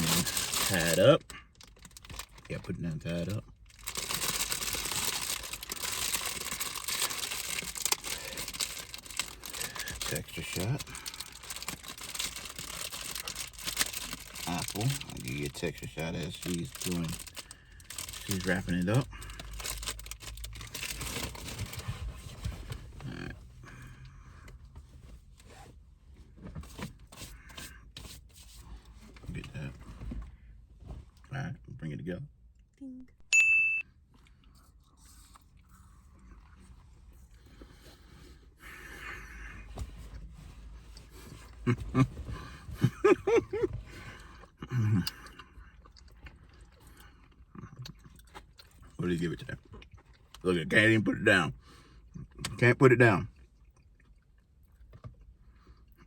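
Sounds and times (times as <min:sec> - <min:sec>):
plastic bag rustling and crinkling: 0:00.0 - 0:02.5, 0:03.1 - 0:22.5
person chewing caramel apple: 0:03.6 - 0:21.7, 0:43.2 - 0:50.4, 0:53.3 - 0:56.0.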